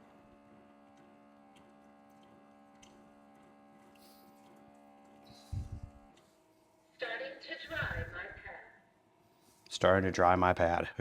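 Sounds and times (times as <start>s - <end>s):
faint electrical hum: 0.0s - 11.0s
soft ticks: 0.9s - 3.5s.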